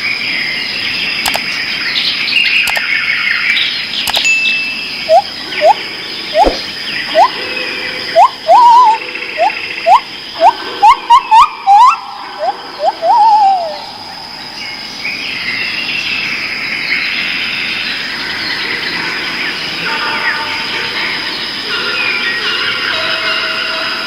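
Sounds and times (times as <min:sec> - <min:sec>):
chorus of bird chirps: 0:00.0 - 0:24.0
steady high-pitched hum: 0:04.1 - 0:15.6
bird whistles: 0:05.1 - 0:07.4, 0:08.1 - 0:13.9.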